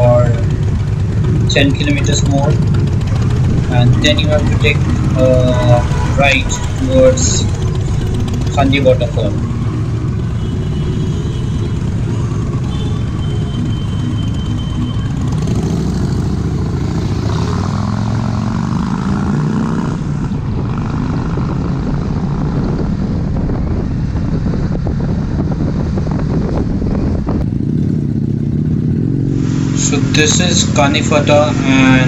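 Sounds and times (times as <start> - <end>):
motorcycle engine drone: 0.0 - 32.0
wind noise on microphone: 19.8 - 28.6.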